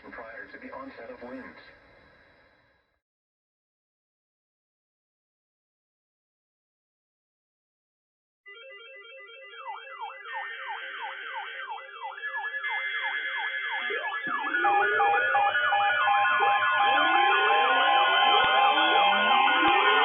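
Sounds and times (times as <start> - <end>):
electronic emergency sirens: 8.5 - 20.0
siren yelp sweeps: 8.5 - 20.0
steady siren tones: 8.5 - 20.0
fast alternating beeps: 9.6 - 20.0.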